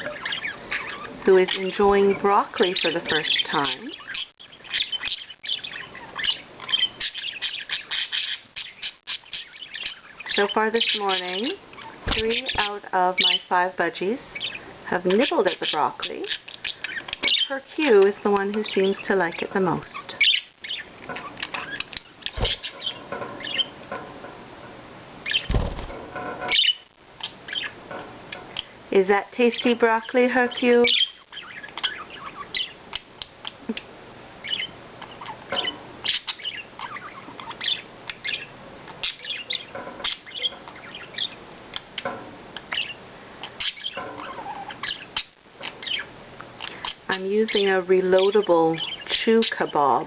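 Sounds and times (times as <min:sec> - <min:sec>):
budgies chirping and chattering: 0:00.0 - 0:23.9, 0:25.2 - 0:50.0
low thumps: 0:25.4 - 0:26.1.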